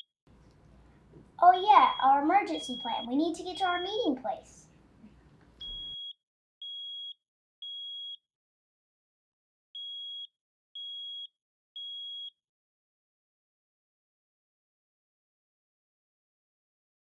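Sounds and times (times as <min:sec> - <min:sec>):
smoke alarm beeping: 0:01.5 - 0:04.1, 0:05.6 - 0:08.2, 0:09.8 - 0:12.3.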